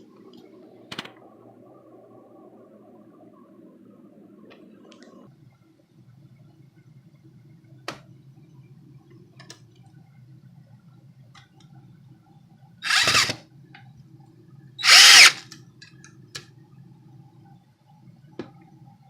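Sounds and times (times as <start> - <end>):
click: 4.5 - 5.2
power drill bursts: 12.8 - 13.4, 14.8 - 15.4.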